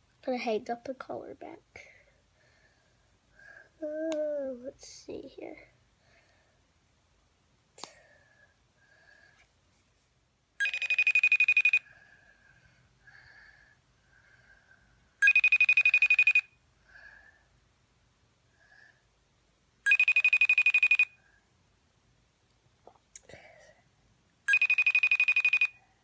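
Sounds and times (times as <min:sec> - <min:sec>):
smartphone ringing: 0:10.6 - 0:11.9, 0:15.2 - 0:16.6, 0:19.8 - 0:21.2, 0:24.5 - 0:25.8.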